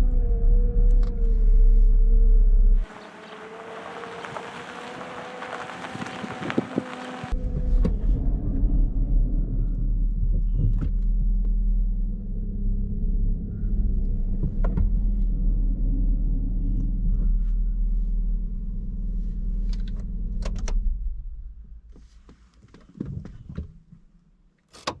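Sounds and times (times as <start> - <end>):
car engine rumbling: 2.8 - 20.5.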